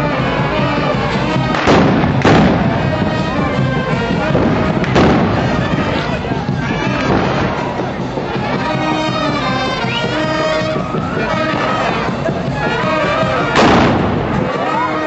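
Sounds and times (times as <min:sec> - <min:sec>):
band music playing: 0:00.0 - 0:15.0
rifle blank gunshot: 0:01.6 - 0:02.7, 0:04.9 - 0:05.4, 0:13.6 - 0:14.2.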